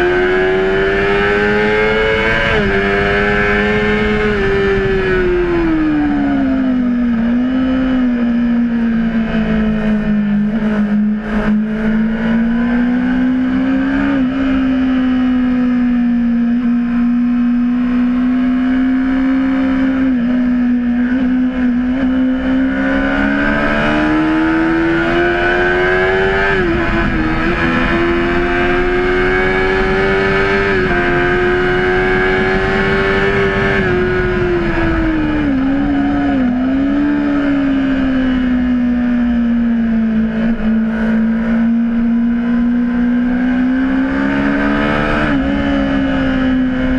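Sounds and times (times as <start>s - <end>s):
motorcycle engine at high revs: 0.0s - 46.9s
steady rushing noise: 8.0s - 14.6s.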